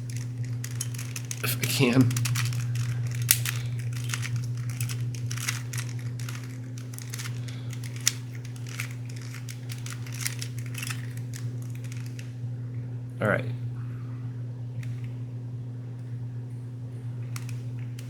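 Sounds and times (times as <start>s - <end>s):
plastic puzzle cube clicking: 0.0s - 12.3s
steady low hum: 0.0s - 18.0s.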